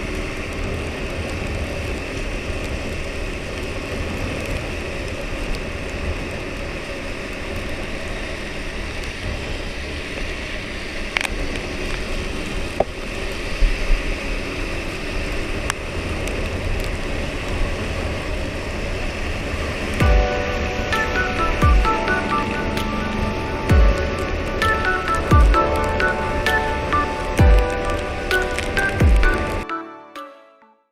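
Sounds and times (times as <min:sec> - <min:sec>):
wet road noise: 0:00.0 - 0:29.8
music: 0:20.0 - 0:30.9.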